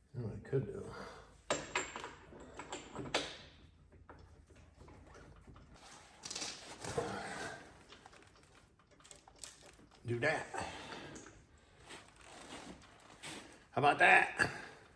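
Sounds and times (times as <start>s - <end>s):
rustling scrape: 11.8s - 13.7s.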